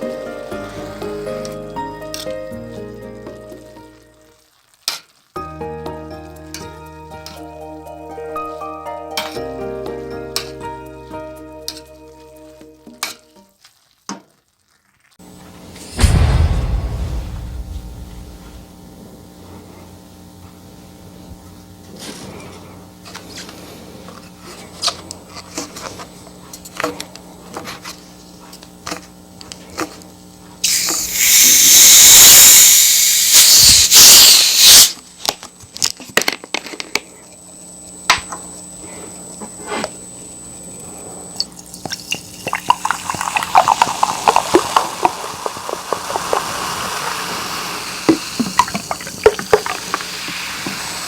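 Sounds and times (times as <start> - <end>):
hiss with crackling: 30.6 - 35.0, 42.4 - 51.0
water pouring into sink: 41.5 - 51.0.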